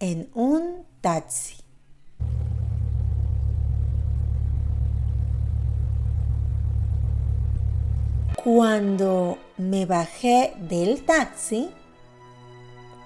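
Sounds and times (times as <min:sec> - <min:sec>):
car engine rumble: 0:02.2 - 0:08.4.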